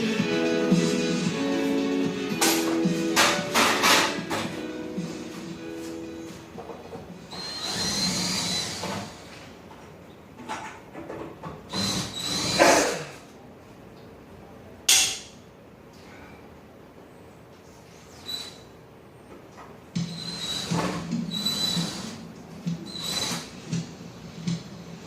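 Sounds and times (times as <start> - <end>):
power drill whining: 7.3 - 9.4, 11.7 - 12.8, 20.0 - 22.2, 22.8 - 23.7.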